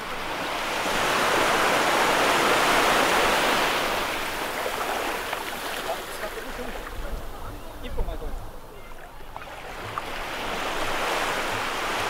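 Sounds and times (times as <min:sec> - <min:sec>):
wave breaking on beach: 0:00.0 - 0:07.6.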